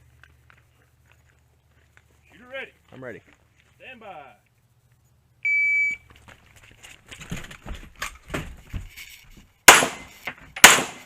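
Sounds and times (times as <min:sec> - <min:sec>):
shot timer beep: 0:05.5 - 0:06.0
scuffs of movement: 0:08.8 - 0:09.5
pistol shot: 0:09.7 - 0:11.0.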